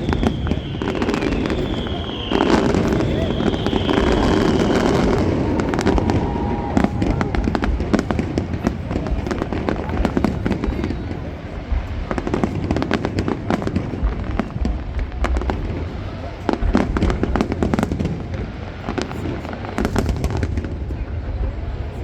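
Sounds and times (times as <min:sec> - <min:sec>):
fireworks bangs and crackles: 0:00.0 - 0:22.0
low rumble: 0:04.0 - 0:09.4.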